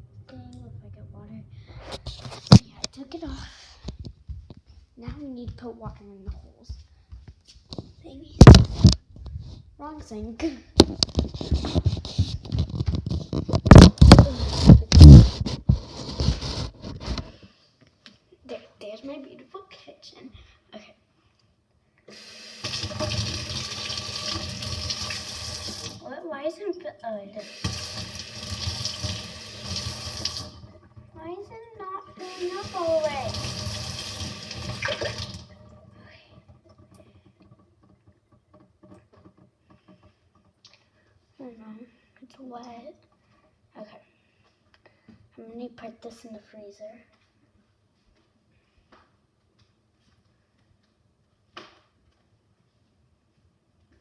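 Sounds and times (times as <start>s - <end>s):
microphone handling noise: 1.6s - 2.9s, 3.7s - 6.5s, 7.1s - 9.8s, 10.8s - 17.4s.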